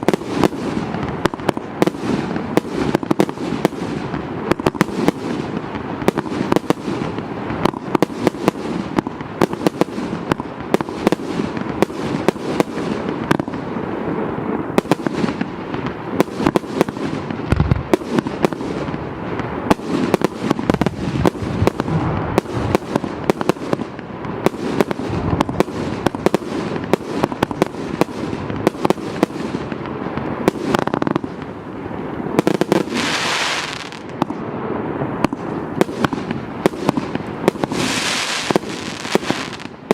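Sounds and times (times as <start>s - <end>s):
firework launch bangs: 0.0s - 31.6s
firework crackling bursts: 0.0s - 39.9s.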